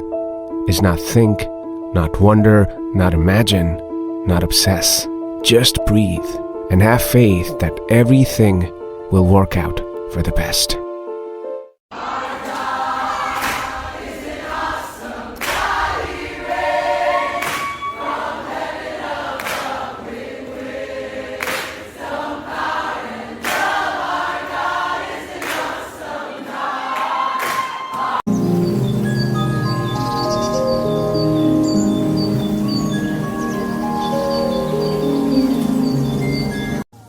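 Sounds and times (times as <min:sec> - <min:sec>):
choir singing: 0:11.9 - 0:28.6, 0:29.4 - 0:36.8.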